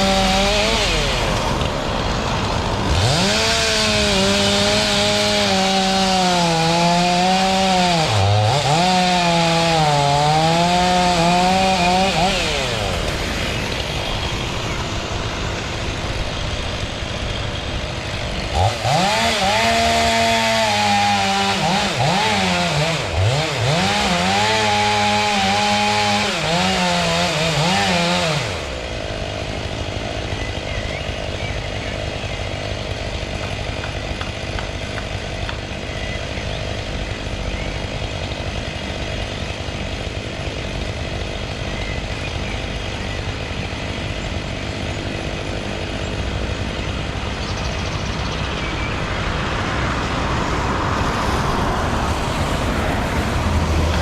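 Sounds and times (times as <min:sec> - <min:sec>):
chainsaw cutting wood: 0:00.0 - 0:54.0.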